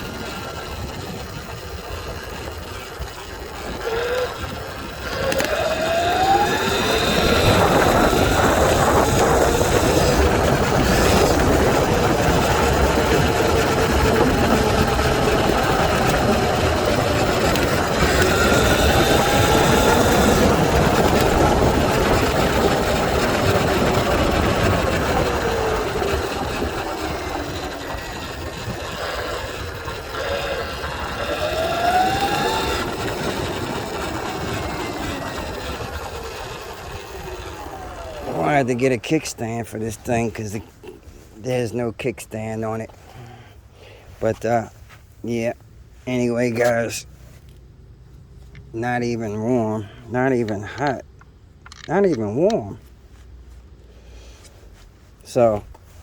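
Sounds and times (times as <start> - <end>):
electric dirt bike motor whining: 0.0 - 41.4
wind on microphone: 0.0 - 41.4.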